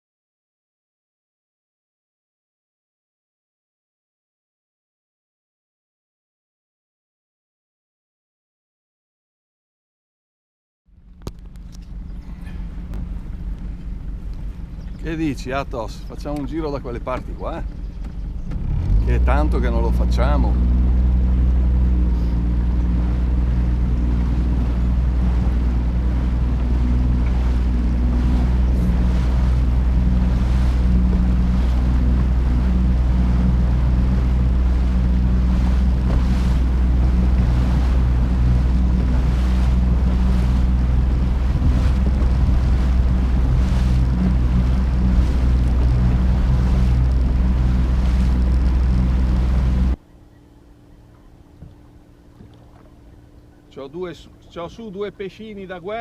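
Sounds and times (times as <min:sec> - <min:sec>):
boat motor running: 0:10.9 - 0:56.0
water rushing along hull: 0:10.9 - 0:56.0
wind on microphone: 0:20.5 - 0:50.0.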